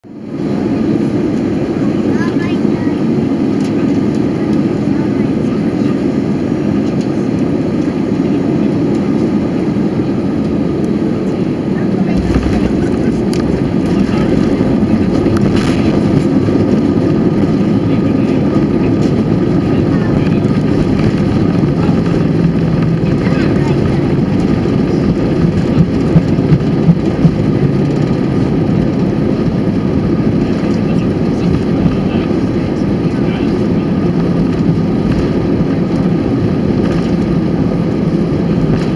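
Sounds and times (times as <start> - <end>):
airplane cabin roar in flight: 0.0 - 38.9
brief thumps: 12.2 - 16.2.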